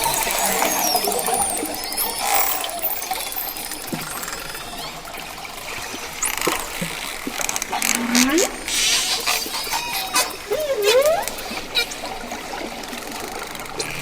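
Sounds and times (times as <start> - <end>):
dolphin whistles: 0.0 - 4.9, 8.7 - 11.9
water noise: 0.0 - 14.0.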